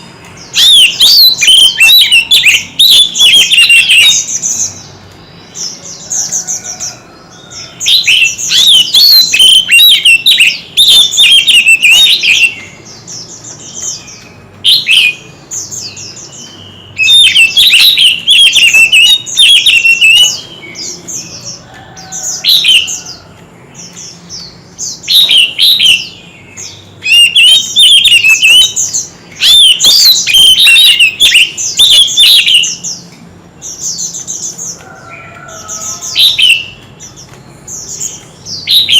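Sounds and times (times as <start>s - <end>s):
bird singing whistled phrases: 0.6s - 4.8s, 7.6s - 13.0s, 13.6s - 21.5s, 25.0s - 33.1s, 35.7s - 36.8s, 38.6s - 38.9s.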